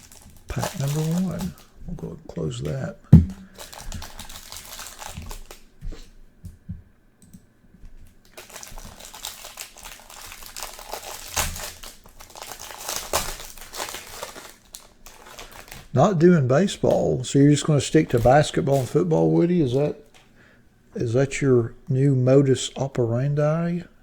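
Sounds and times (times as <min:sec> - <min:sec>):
plastic wrappers crinkling: 0:00.0 - 0:06.2, 0:08.0 - 0:16.0, 0:16.7 - 0:20.4.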